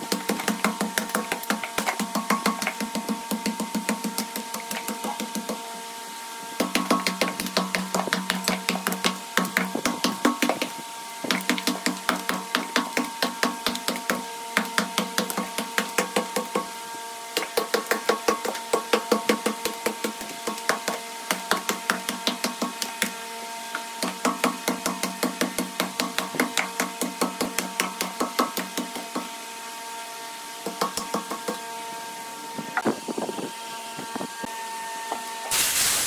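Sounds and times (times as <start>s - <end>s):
tool knocking on wood: 6.6s - 16.7s.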